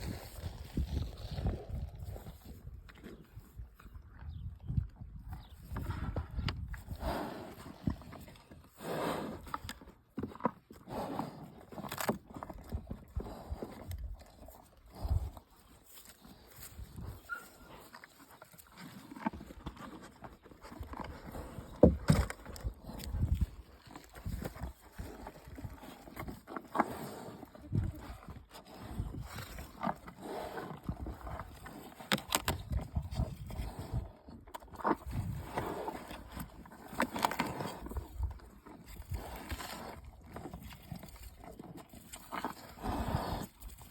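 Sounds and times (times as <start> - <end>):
cattle crunching food: 0.0 - 43.9
animal chewing: 5.3 - 43.9
animal breathing: 42.4 - 43.9.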